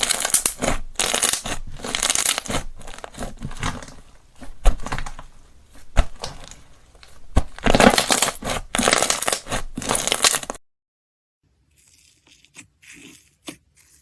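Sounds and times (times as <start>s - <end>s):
slime popping: 0.0s - 10.6s
slime squishing and crackling: 0.0s - 10.6s.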